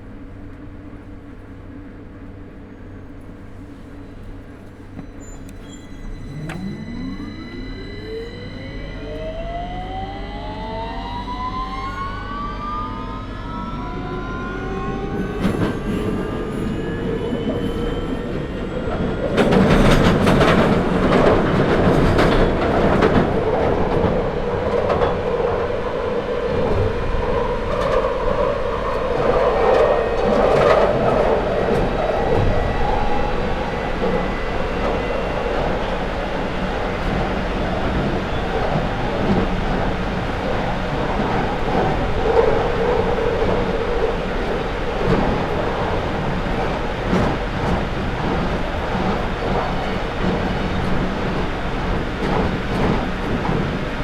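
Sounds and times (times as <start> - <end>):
traction motors whining: 4.7 - 54.0
wheel-on-rail rumble and clatter: 12.7 - 54.0.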